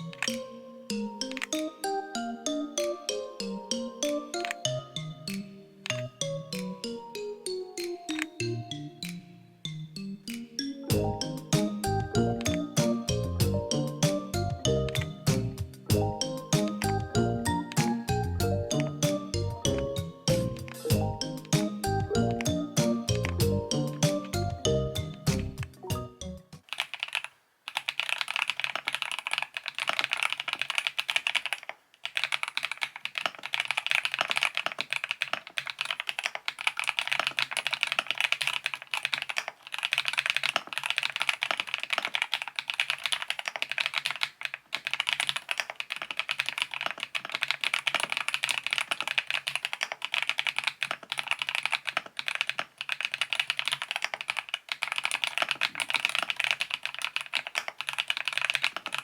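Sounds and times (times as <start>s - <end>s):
mechanical keyboard typing: 0.0s - 0.4s, 4.0s - 4.7s, 8.1s - 8.4s, 12.4s - 13.0s, 14.0s - 15.4s, 16.3s - 24.4s, 26.6s - 59.0s.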